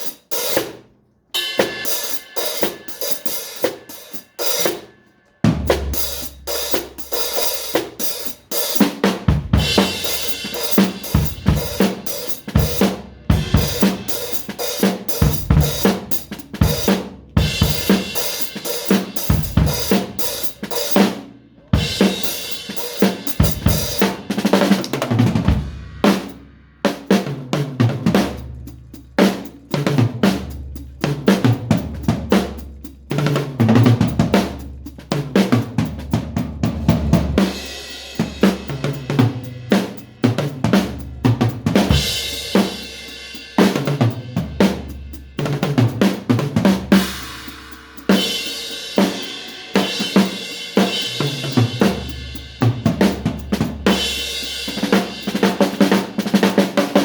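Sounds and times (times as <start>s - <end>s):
drum kit playing: 0.0s - 57.0s.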